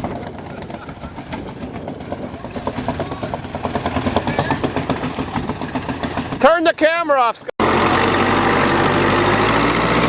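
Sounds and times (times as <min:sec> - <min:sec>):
vehicle engine pulsing: 0:00.0 - 0:06.9, 0:07.6 - 0:10.0.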